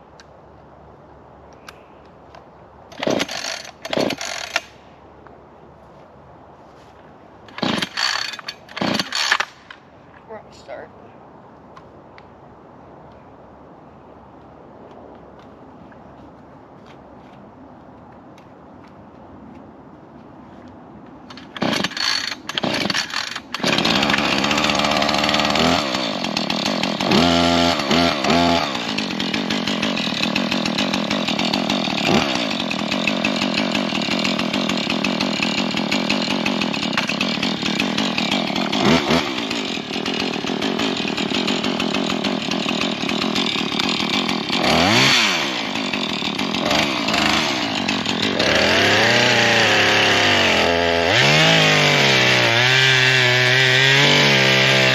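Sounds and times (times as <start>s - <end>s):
chainsaw revving and cutting: 2.9s - 4.7s, 7.5s - 9.5s, 21.3s - 54.9s.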